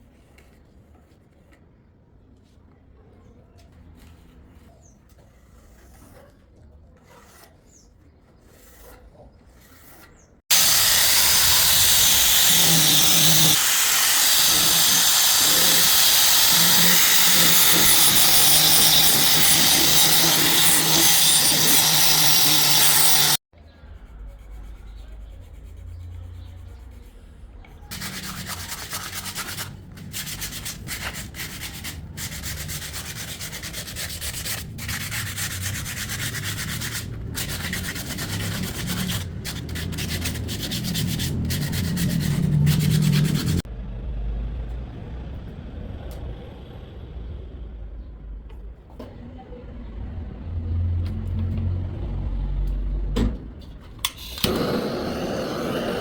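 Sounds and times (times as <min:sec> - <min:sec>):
wood being sanded: 0:10.5 - 0:23.4, 0:27.9 - 0:43.7.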